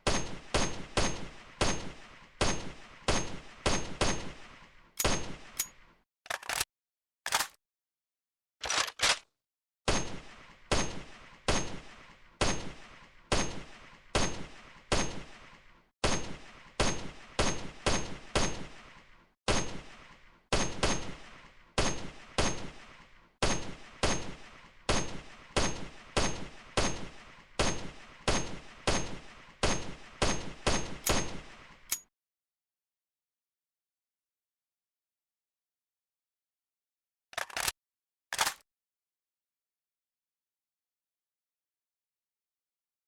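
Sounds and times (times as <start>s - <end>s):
sharp click: 6.3s - 6.6s, 7.3s - 7.6s, 37.4s - 37.7s, 38.4s - 38.6s.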